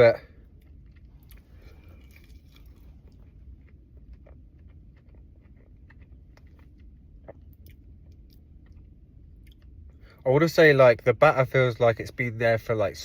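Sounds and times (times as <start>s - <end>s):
low steady hum: 0.0s - 13.0s
person chewing: 0.3s - 10.0s.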